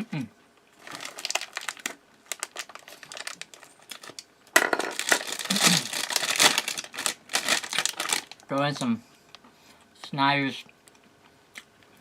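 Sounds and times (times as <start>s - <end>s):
snack packet crinkling: 0.8s - 8.8s
crunchy snack bitten: 5.0s - 8.4s.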